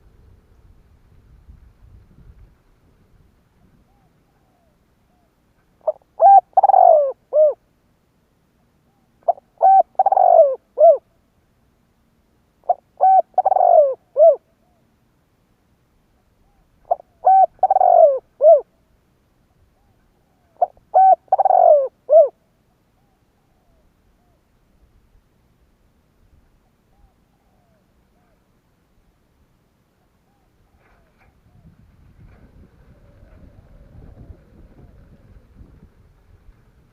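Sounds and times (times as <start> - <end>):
dove cooing: 3.7 - 7.6, 8.9 - 11.1, 12.6 - 14.8, 16.4 - 18.7, 19.8 - 22.4, 23.0 - 24.5, 26.9 - 28.5, 30.2 - 36.2.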